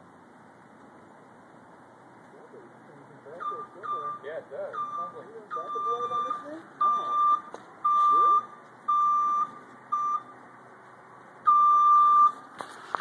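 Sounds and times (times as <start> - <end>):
vehicle backup alarm beeps: 3.3 - 10.4, 11.4 - 13.0.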